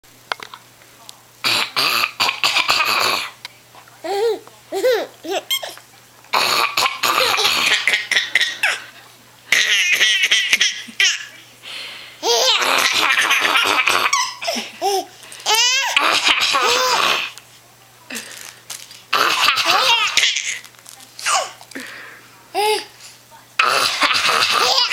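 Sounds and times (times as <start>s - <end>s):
woman coughing harshly: 1.4s - 3.4s, 6.3s - 8.8s, 23.6s - 24.9s
baby giggling: 4.1s - 5.8s, 9.5s - 11.3s, 12.2s - 17.2s, 19.2s - 20.6s, 23.9s - 24.9s.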